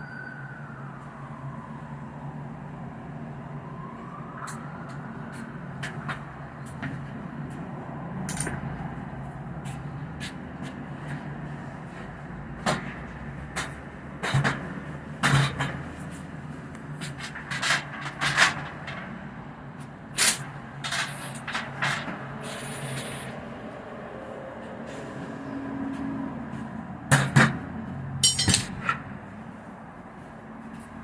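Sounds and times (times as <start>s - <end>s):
passing siren: 0.0s - 8.9s
low traffic hum: 0.0s - 31.0s.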